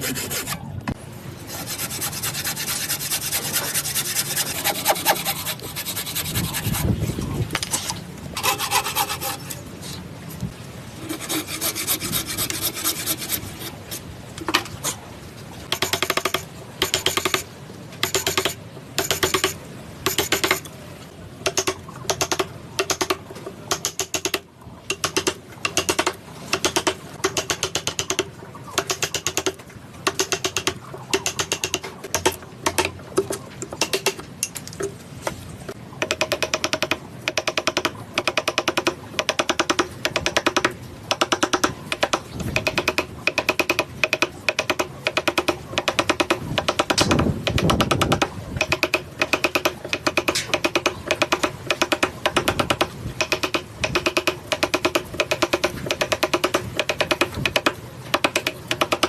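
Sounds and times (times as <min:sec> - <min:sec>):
hand tool scraping wood: 0:00.0 - 0:00.6, 0:01.5 - 0:07.0, 0:07.6 - 0:10.0, 0:11.0 - 0:14.0.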